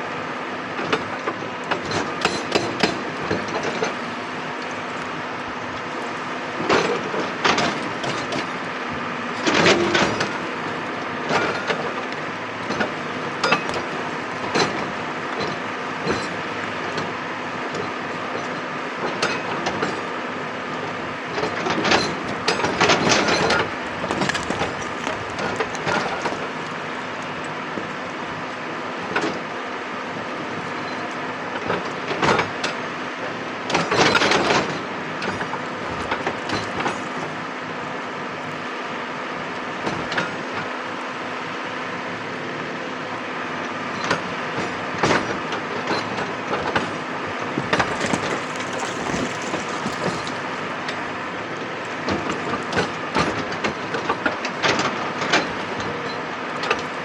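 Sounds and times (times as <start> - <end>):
metallic clanks and scraping: 23.0 - 27.0.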